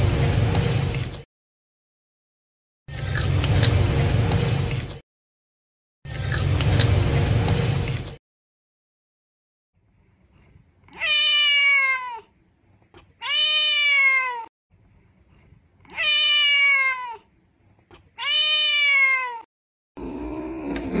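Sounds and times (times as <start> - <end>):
cat meowing: 10.9 - 12.3, 13.2 - 14.5, 15.9 - 17.3, 18.2 - 19.5.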